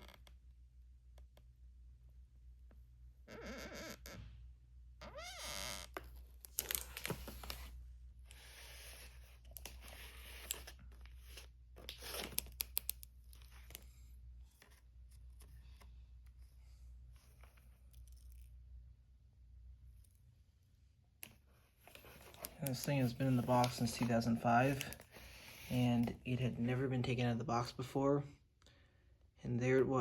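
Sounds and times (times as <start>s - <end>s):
crinkling and scraping: 5.8s - 18.6s, 21.2s - 26.5s.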